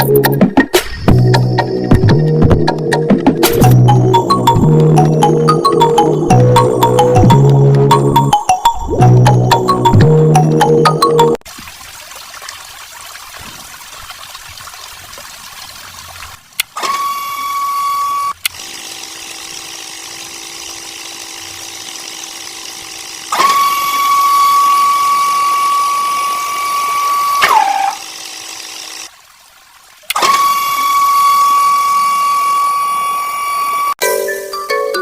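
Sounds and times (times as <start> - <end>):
small motor high whine: 16.8 - 29.1, 30.1 - 34.0
motor low steady hum: 16.9 - 29.1.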